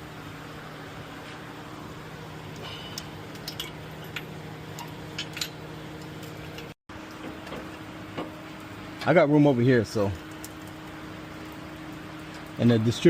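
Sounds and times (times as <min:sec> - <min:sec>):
steady hum: 0:00.0 - 0:13.0.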